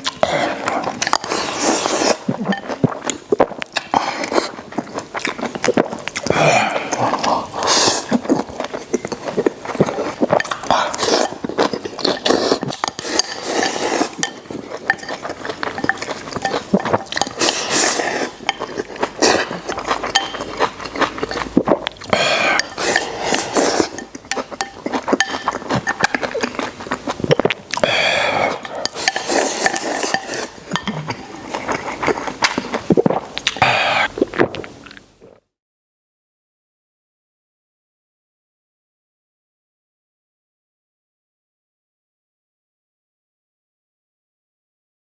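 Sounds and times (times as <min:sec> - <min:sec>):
person chewing: 0:00.0 - 0:35.4
person slurping: 0:00.0 - 0:35.4
utensils scraping a bowl: 0:00.5 - 0:02.8, 0:09.0 - 0:26.7, 0:28.2 - 0:32.6.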